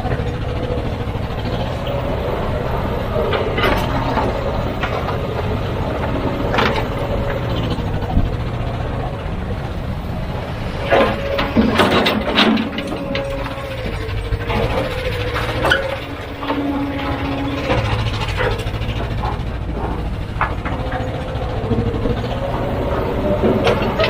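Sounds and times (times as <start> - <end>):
diesel machinery running: 0.0 - 24.0
metal clanks and knocks: 0.0 - 24.0.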